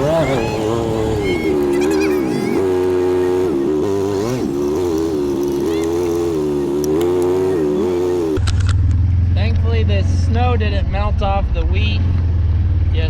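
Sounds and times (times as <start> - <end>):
wavering drivetrain whine: 0.0 - 9.2
truck engine droning: 0.0 - 13.0.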